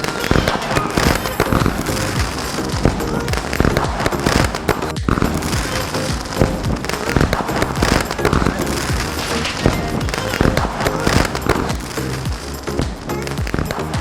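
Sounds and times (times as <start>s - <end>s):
firecrackers banging: 0.0s - 14.0s.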